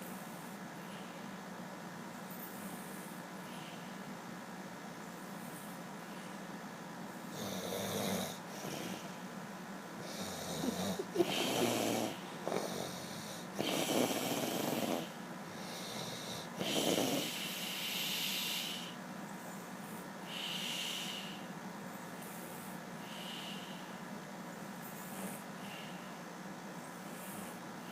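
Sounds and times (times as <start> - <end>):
person snoring: 10.0 - 19.0.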